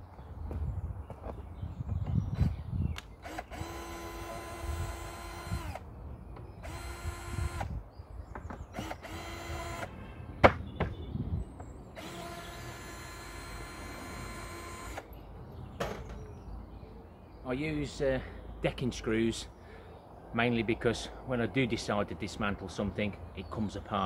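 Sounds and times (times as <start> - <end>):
cordless drill whining: 3.2 - 5.8, 6.6 - 7.8, 8.8 - 9.9, 12.0 - 15.1.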